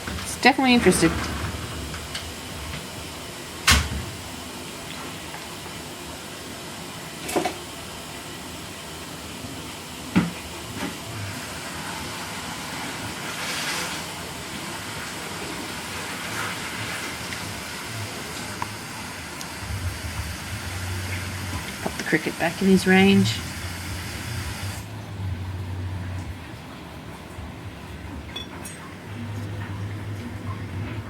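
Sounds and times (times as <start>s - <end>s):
steady low hiss: 19.3s - 26.2s.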